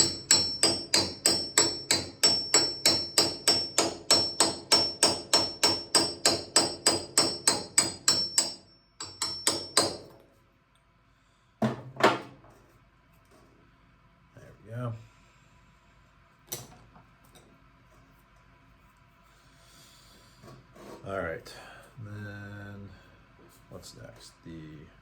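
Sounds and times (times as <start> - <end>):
hammer striking metal socket: 0.0 - 10.1.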